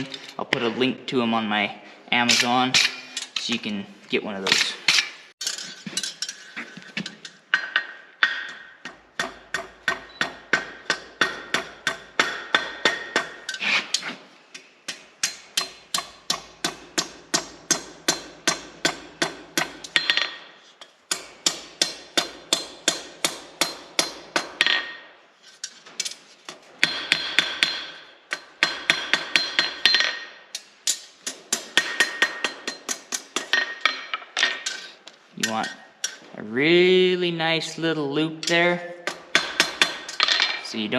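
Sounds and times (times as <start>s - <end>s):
hammer striking steel on anvil: 2.3s - 3.4s, 7.2s - 13.6s, 14.9s - 20.5s, 21.1s - 26.2s, 26.8s - 36.3s, 38.4s - 40.6s.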